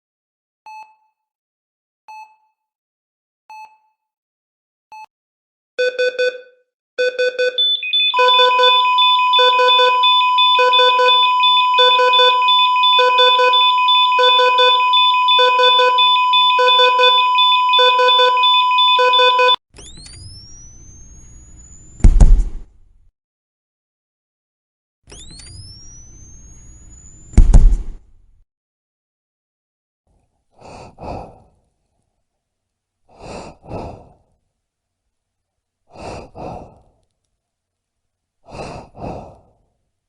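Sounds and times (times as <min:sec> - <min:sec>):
heart monitor beeps: 0:05.8 - 0:19.6
monitor alarm beeps: 0:07.0 - 0:19.6, 0:25.3 - 0:27.3
defibrillator charging whine: 0:07.6 - 0:19.6, 0:20.2 - 0:22.1, 0:25.3 - 0:27.4
flatline tone: 0:07.6 - 0:19.6
defibrillator discharge thump: 0:27.3 - 0:28.0.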